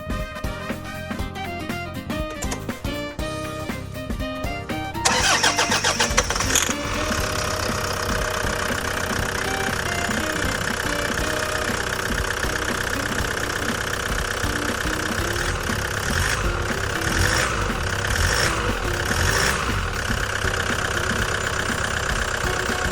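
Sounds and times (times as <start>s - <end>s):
diesel engine cranking and idling: 5.0s - 22.9s.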